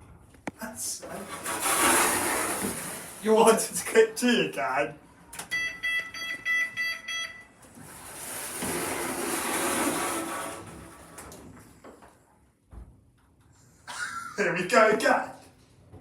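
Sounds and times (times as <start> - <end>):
short high electronic lift beeps: 5.5 - 7.5.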